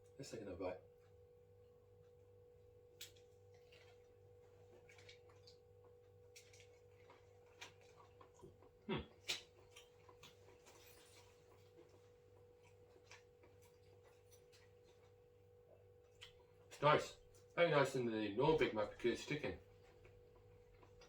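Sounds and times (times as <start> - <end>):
faint steady hum: 0.0 - 21.0
person chewing food: 2.9 - 17.6, 19.6 - 21.0.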